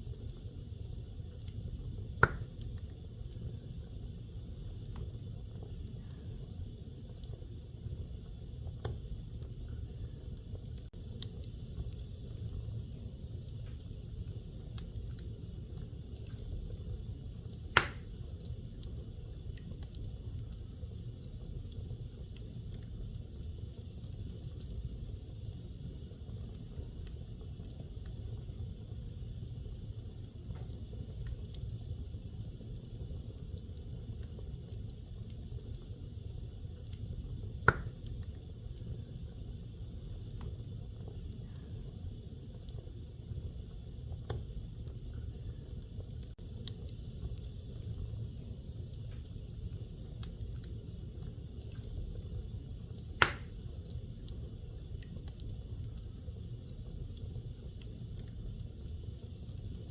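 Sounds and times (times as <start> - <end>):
fire crackling: 0.0 - 59.9
fire flames rumbling: 0.0 - 59.9
wood fire pop: 1.4 - 3.0, 8.7 - 9.1, 13.6 - 16.6, 17.5 - 18.8, 30.5 - 30.9, 37.5 - 38.4, 44.2 - 44.5, 53.0 - 54.3.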